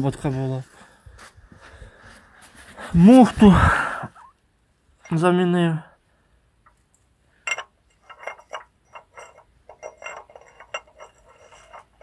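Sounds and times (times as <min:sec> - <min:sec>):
metal parts clinking: 0:07.4 - 0:12.0.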